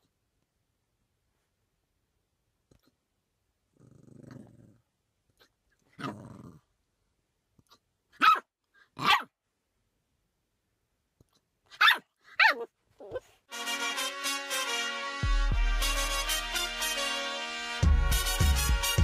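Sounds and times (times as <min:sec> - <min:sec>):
dog growling: 0:03.7 - 0:04.9, 0:06.0 - 0:06.7
dog barking: 0:08.2 - 0:09.3, 0:11.7 - 0:13.3.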